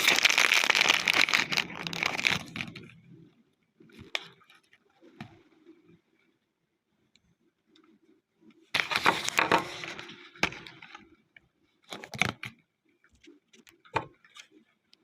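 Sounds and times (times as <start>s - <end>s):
packaging crinkling: 0.0s - 2.8s, 8.8s - 10.0s
packaging rustles with clicks: 0.0s - 2.8s.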